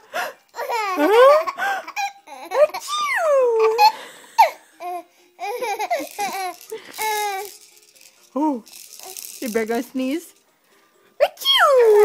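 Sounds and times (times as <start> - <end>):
baby laughing: 0.6 - 7.5.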